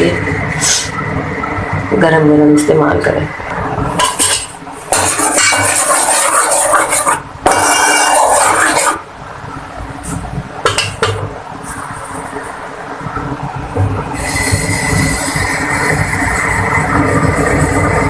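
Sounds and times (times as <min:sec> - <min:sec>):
pot and utensils clattering: 0:04.0 - 0:09.0.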